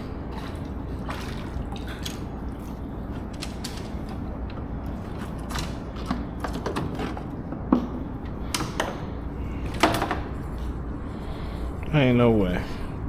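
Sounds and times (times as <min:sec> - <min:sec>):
steady low rumble: 0:07.2 - 0:13.0.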